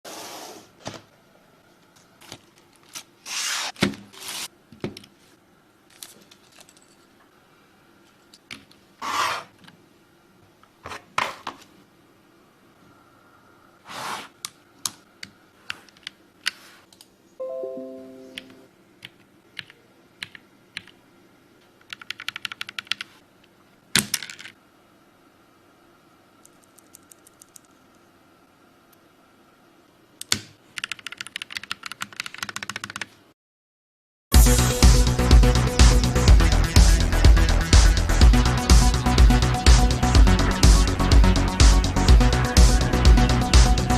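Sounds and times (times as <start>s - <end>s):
keyboard typing clicks: 18.0s - 21.0s, 30.2s - 33.1s.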